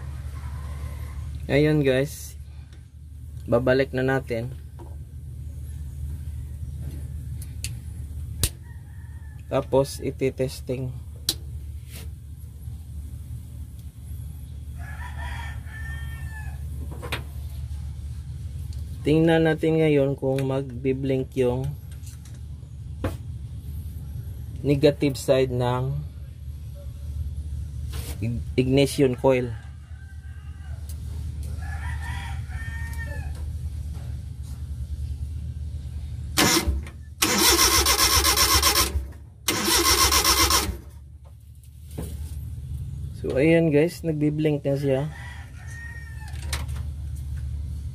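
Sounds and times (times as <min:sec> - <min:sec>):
rooster crowing: 0:00.0 - 0:01.8, 0:08.6 - 0:10.0, 0:14.7 - 0:16.9, 0:29.0 - 0:33.6, 0:44.8 - 0:46.8
steady low hum: 0:00.0 - 0:47.9
engine cranking without starting: 0:36.3 - 0:41.0.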